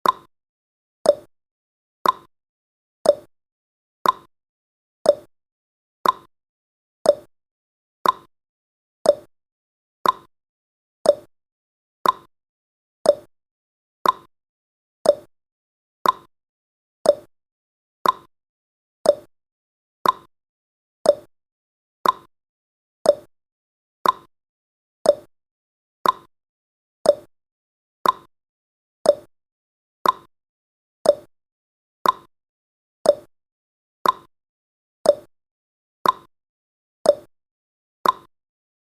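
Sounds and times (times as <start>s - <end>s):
clock ticking: 2.0s - 2.3s, 4.0s - 4.3s, 6.0s - 6.3s, 8.0s - 8.3s, 10.0s - 10.3s, 12.0s - 12.3s, 14.0s - 14.3s, 15.1s - 15.3s, 16.0s - 16.3s, 18.0s - 18.3s, 19.1s - 19.3s, 20.0s - 20.3s, 21.1s - 21.3s, 22.0s - 22.3s, 24.0s - 24.3s, 26.0s - 26.3s, 28.0s - 28.3s, 29.1s - 29.3s, 30.0s - 30.3s, 31.1s - 31.3s, 32.0s - 32.3s, 33.1s - 33.3s, 34.0s - 34.3s, 35.1s - 35.3s, 36.0s - 36.3s, 38.0s - 38.3s.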